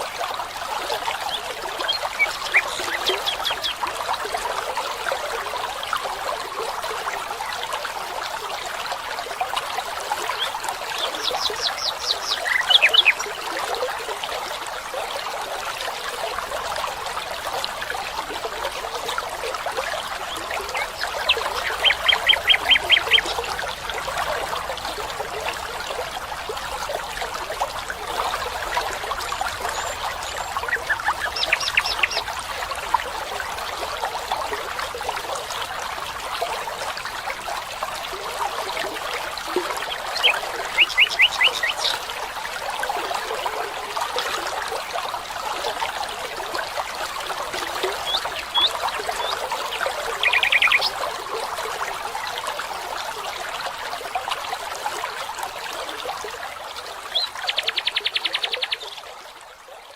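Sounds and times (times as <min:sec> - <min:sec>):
stream trickling: 0:00.0 - 0:59.9
bird calling: 0:10.4 - 0:13.2, 0:20.4 - 0:23.6, 0:29.8 - 0:32.3, 0:39.9 - 0:42.0.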